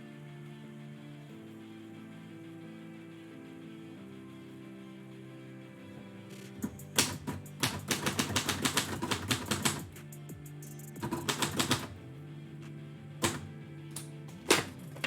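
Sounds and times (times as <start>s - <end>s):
background music: 0.0s - 15.0s
typewriter keys clacking: 6.6s - 10.0s, 10.8s - 12.0s, 13.2s - 13.4s.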